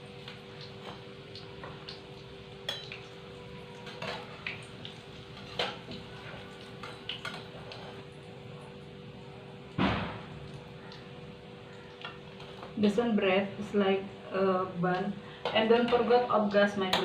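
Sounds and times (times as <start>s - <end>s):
metal utensils clinking on a pan: 2.7s - 3.1s, 3.8s - 4.6s, 5.4s - 8.0s.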